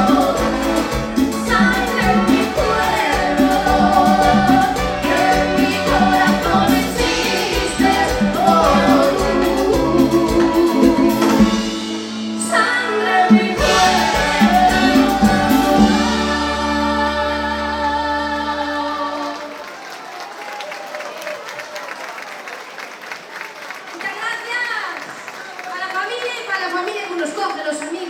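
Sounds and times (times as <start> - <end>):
latin dance band with singing: 0.0 - 19.8
loud band hit: 13.6 - 16.8.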